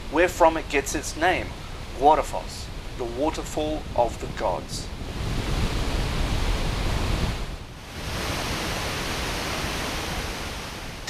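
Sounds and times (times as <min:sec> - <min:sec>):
waterfall roaring: 0:04.9 - 0:11.0.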